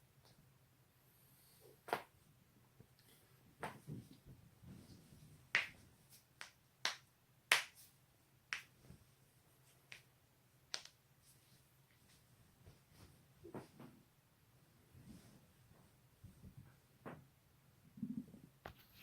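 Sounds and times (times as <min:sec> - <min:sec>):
rustling of body movement: 0:03.2 - 0:06.3, 0:11.2 - 0:14.1, 0:14.7 - 0:17.3.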